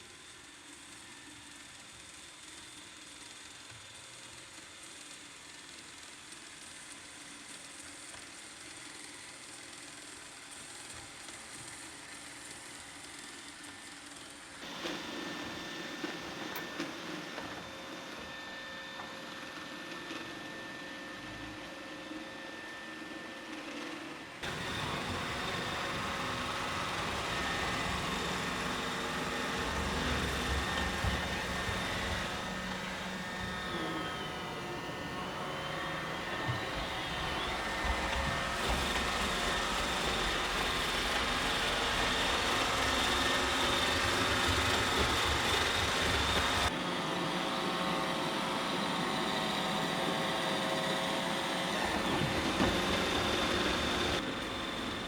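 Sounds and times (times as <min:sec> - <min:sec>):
robot vacuum running: 0:14.6 - 0:55.0.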